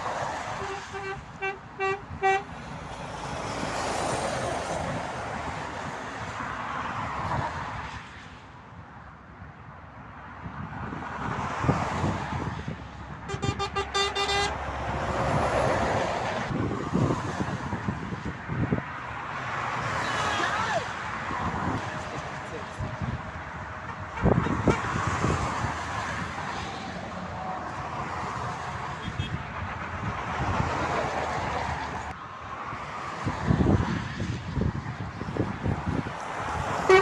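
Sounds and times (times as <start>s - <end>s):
motorway traffic passing: 0.0s - 37.0s
vehicle horn tooting: 0.6s - 2.5s, 13.3s - 14.6s, 23.8s - 24.9s, 29.0s - 29.4s.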